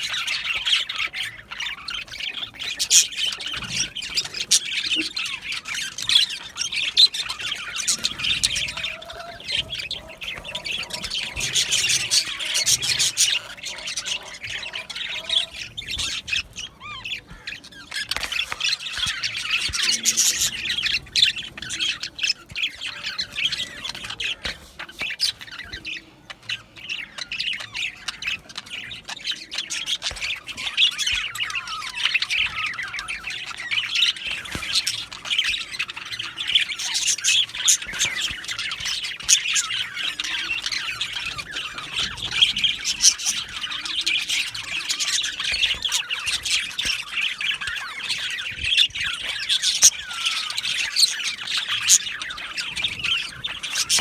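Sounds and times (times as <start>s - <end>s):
bird squawks: 0.0s - 54.0s
budgerigars chattering: 0.0s - 54.0s.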